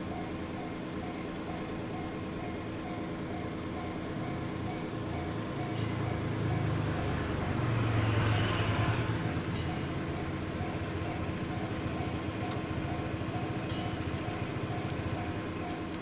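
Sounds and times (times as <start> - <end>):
level-crossing warning bell ringing: 0.0 - 7.8, 9.4 - 16.0
vehicle passing: 6.0 - 11.0.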